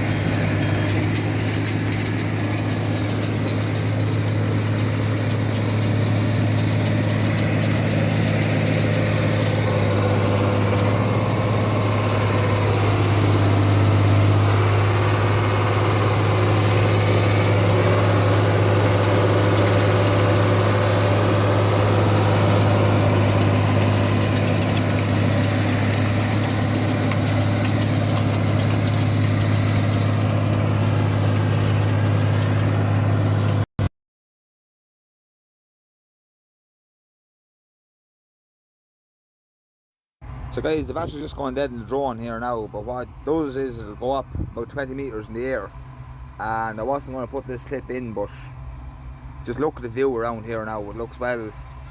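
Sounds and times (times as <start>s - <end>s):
diesel engine running: 0.0s - 33.7s, 40.2s - 51.9s.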